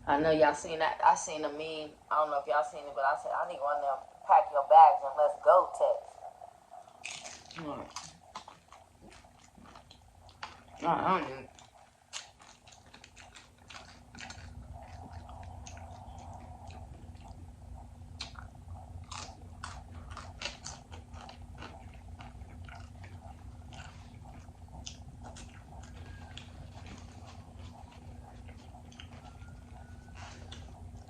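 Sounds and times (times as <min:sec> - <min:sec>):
steady low hum: 0:00.0 - 0:31.0
chewing crunchy chips: 0:06.8 - 0:31.0
wet mouth clicks: 0:11.5 - 0:17.4, 0:18.2 - 0:26.5.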